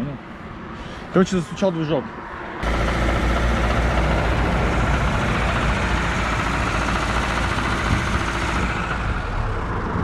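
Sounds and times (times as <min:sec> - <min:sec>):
car engine running with knock: 0:02.6 - 0:10.0.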